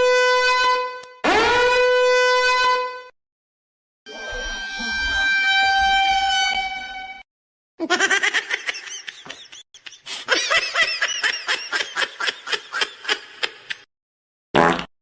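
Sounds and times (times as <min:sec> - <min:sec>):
person laughing hard: 0:07.8 - 0:13.8.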